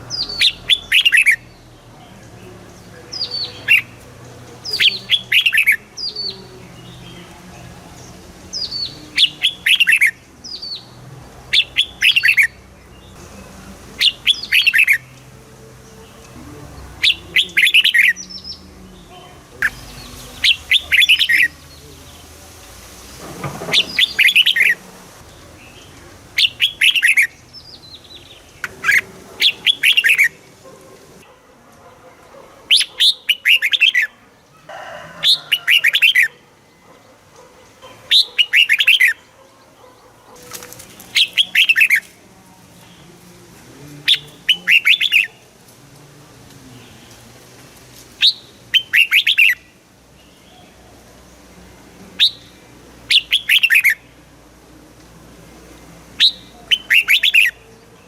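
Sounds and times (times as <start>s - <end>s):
bird singing whistled notes: 0.1s - 1.7s, 4.6s - 7.2s, 8.5s - 10.9s, 11.6s - 13.2s, 14.0s - 15.2s, 17.0s - 18.6s, 19.6s - 21.8s, 23.8s - 24.8s, 25.7s - 30.3s, 48.2s - 49.7s, 52.2s - 54.1s, 56.2s - 57.6s.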